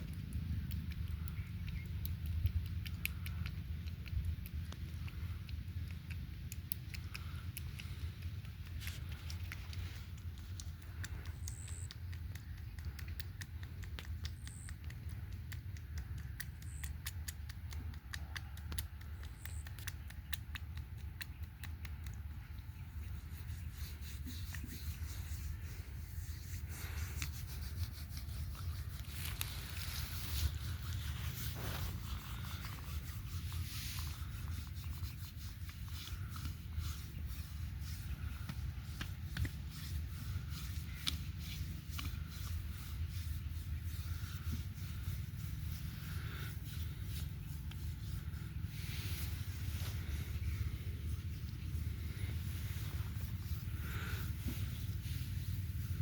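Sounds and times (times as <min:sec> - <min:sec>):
wet clicks and slaps: 0:00.0 - 0:22.9
hands rubbing oiled skin: 0:00.0 - 0:56.0
steady low hum: 0:00.0 - 0:56.0.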